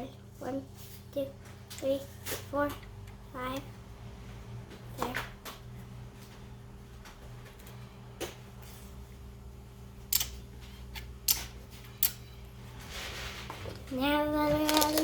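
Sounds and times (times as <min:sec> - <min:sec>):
steady low hum: 0:00.0 - 0:15.0
small objects clicking: 0:14.6 - 0:15.0.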